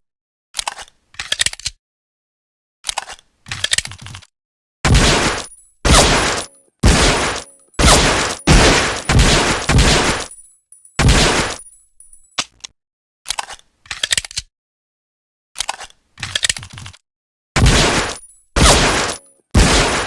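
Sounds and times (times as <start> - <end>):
gunshots with echo: 4.9 - 10.4, 11.0 - 11.6, 17.6 - 20.0.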